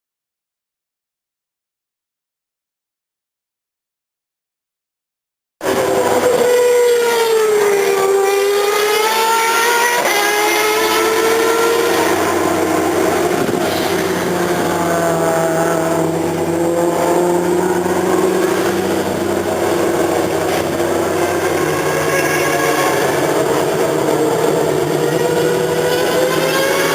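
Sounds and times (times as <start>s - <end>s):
racing car engines revving: 5.6s - 26.9s.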